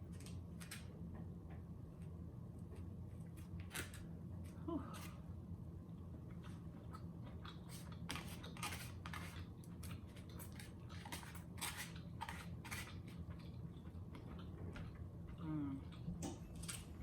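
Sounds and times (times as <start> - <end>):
low steady hum: 0.0 - 17.0
chewing and mouth noises: 6.3 - 16.9.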